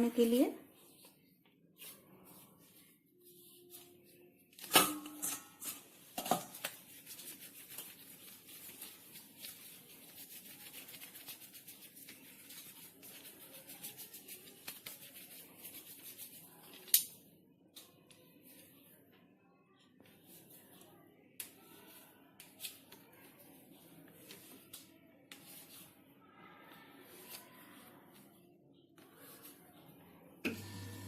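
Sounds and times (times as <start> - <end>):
dough rustling and crackling: 0.1 - 4.7, 5.8 - 16.9.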